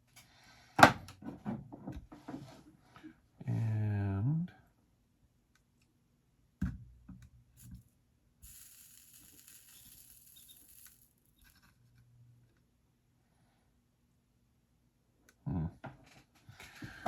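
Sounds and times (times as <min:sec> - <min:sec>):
flux sizzling under soldering iron: 0:08.4 - 0:11.6.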